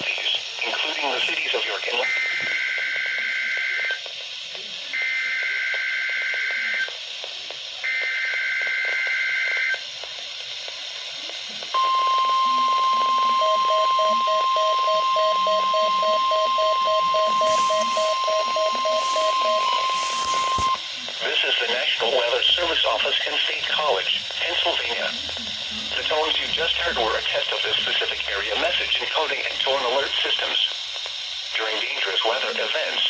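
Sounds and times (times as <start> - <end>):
steady warning alarm tone: 1.0 - 3.9, 11.8 - 30.6
low pulsing beep: 11.8 - 20.8.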